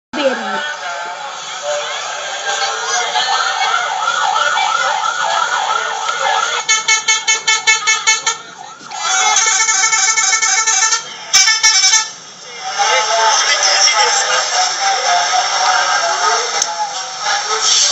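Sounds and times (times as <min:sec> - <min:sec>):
musical air horns: 0:05.7 - 0:13.3.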